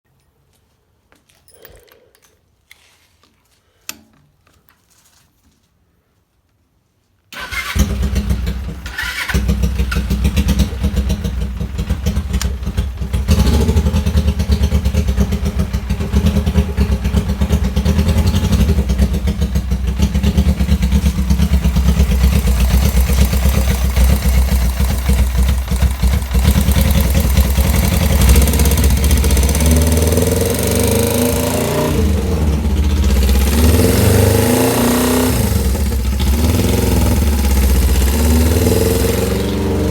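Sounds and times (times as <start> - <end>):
motorcycle engine starting and revving: 7.4 - 39.9.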